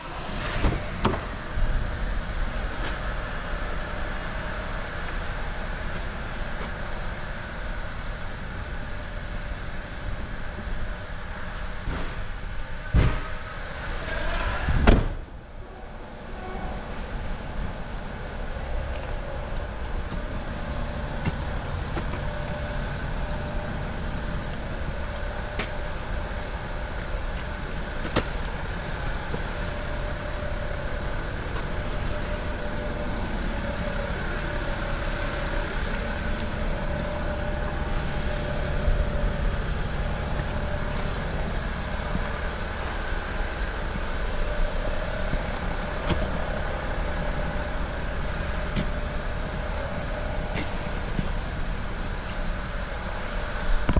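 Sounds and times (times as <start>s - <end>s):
engine idling: 15.6s - 53.9s.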